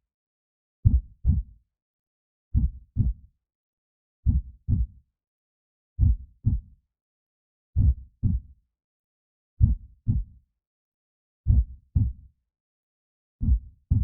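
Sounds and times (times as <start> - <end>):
slow heartbeat thuds: 0.9 - 1.5, 2.6 - 3.2, 4.3 - 4.9, 6.0 - 6.6, 7.8 - 8.4, 9.6 - 10.3, 11.5 - 12.1, 13.4 - 14.0.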